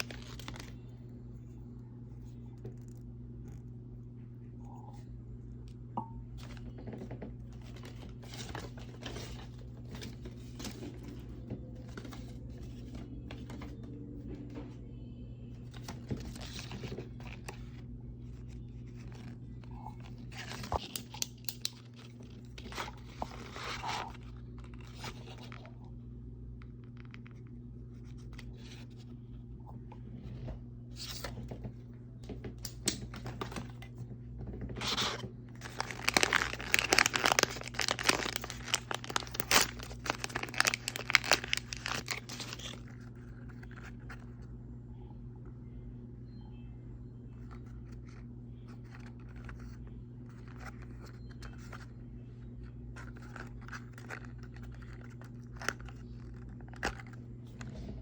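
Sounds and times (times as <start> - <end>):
plastic wrapping crinkling: 0.0 - 0.9, 7.5 - 13.7, 15.6 - 25.8, 34.8 - 44.3, 52.9 - 57.2
steady low hum: 0.0 - 58.0.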